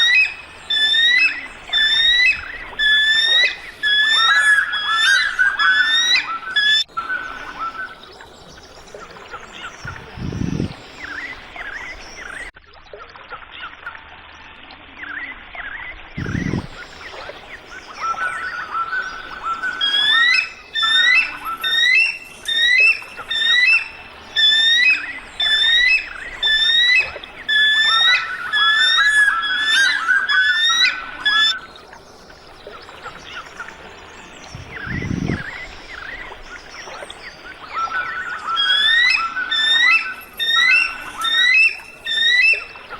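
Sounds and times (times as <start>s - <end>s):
bird whistling repeated notes: 0.0s - 8.0s, 16.2s - 17.2s, 17.9s - 31.6s, 34.5s - 36.6s, 37.7s - 42.9s
birds chirping: 0.0s - 12.5s, 16.2s - 42.9s.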